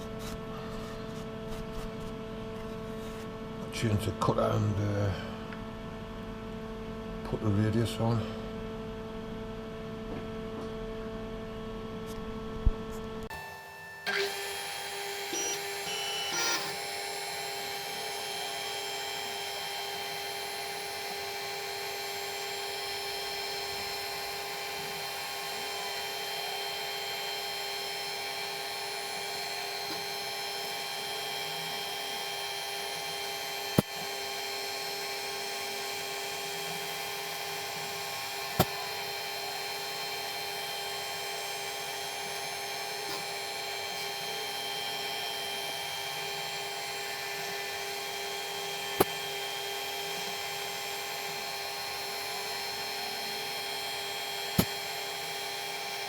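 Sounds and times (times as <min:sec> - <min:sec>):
milling machine whine: 0:13.3 - 0:56.0.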